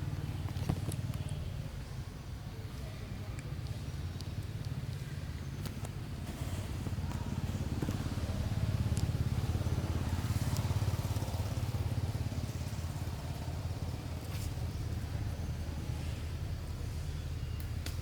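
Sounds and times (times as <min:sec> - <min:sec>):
vehicle engine rumbling: 0:00.0 - 0:18.0
faint clicks: 0:08.9 - 0:09.1.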